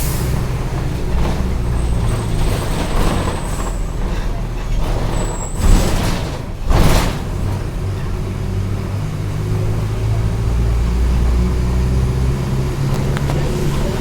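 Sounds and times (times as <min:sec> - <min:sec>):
air brakes burst: 0:00.0 - 0:07.5
bus diesel engine drone: 0:00.0 - 0:14.0.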